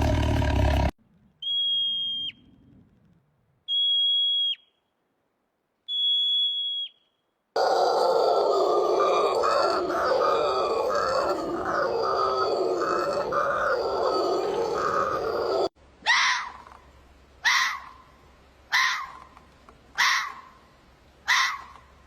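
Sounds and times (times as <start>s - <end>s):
animal grunting calls: 7.6s - 15.8s.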